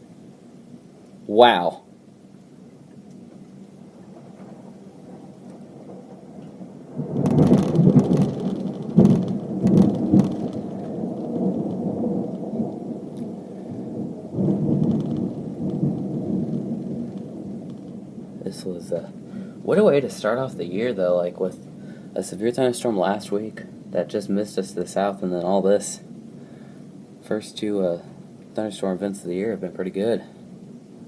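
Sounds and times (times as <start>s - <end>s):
heavy rain hiss: 0.0s - 31.0s
thunder cracking and rumbling: 3.3s - 31.0s.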